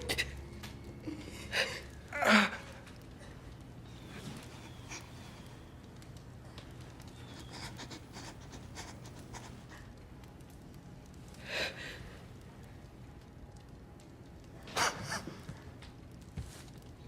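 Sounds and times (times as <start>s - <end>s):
people breathing and shifting: 0.0s - 10.2s
faint clicks and rustles: 0.0s - 17.0s.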